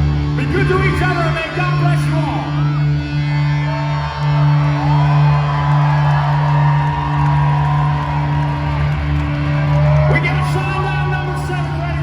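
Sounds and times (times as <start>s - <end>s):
crowd whooping: 3.6s - 12.0s.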